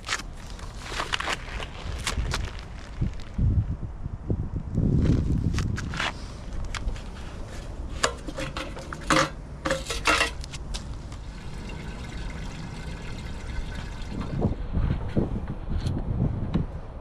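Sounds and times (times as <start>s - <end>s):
low steady rumble: 2.7s - 17.0s
water sloshing: 8.0s - 14.6s.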